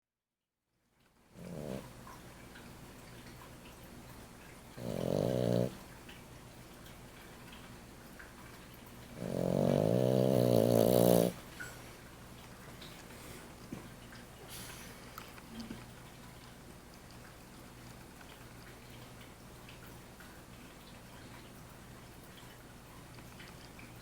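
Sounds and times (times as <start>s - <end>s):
pet snoring: 1.4s - 1.9s, 4.8s - 5.8s, 9.0s - 11.4s.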